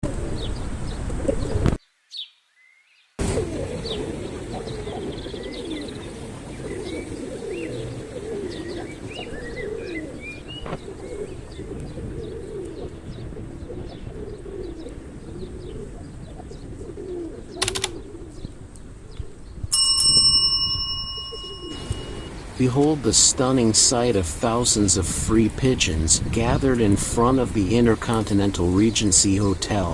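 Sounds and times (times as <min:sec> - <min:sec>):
pigeons cooing: 0:00.0 - 0:01.8, 0:03.2 - 0:19.6, 0:21.1 - 0:25.0
birds chirping: 0:00.4 - 0:29.9.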